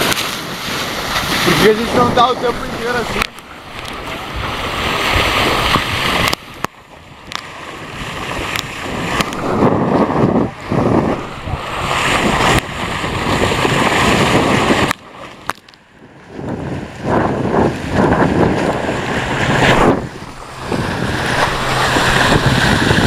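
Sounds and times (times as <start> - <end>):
water rushing past hulls: 0.0 - 23.0
wind buffeting microphone: 0.0 - 23.0.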